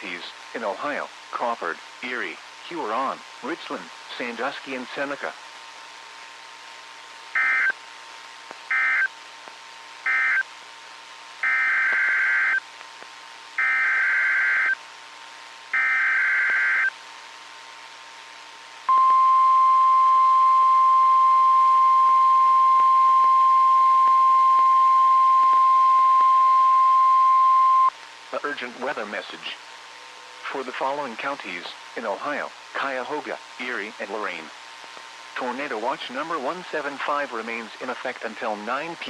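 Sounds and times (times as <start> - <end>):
weather radio alarm tone: 7.4 - 7.8, 8.7 - 9.1, 10.1 - 10.4, 11.4 - 12.6, 13.6 - 14.8, 15.7 - 16.9, 18.9 - 27.9.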